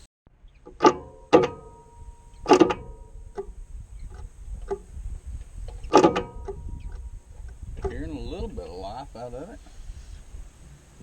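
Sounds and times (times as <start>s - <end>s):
ringing metal clanks: 0.6s - 9.3s
light metal taps: 0.6s - 10.2s.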